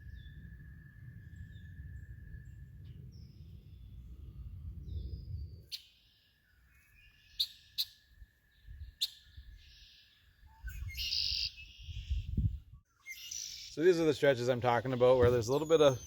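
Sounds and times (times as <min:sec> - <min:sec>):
low rumble: 0:00.0 - 0:05.7
birds chirping and calling: 0:04.9 - 0:16.0.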